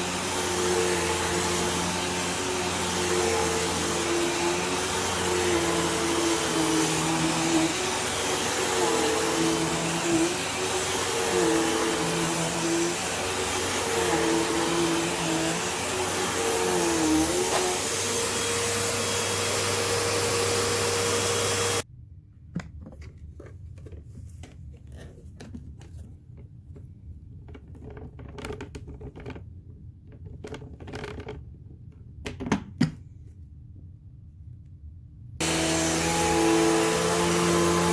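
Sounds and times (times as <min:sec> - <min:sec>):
vacuum cleaner running: 0:00.0 - 0:21.8, 0:35.4 - 0:37.9.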